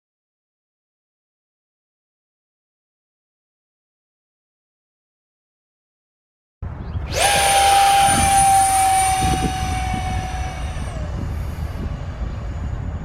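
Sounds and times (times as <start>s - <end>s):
low rumble: 6.6s - 13.0s
electric ducted fan whine: 7.0s - 13.0s.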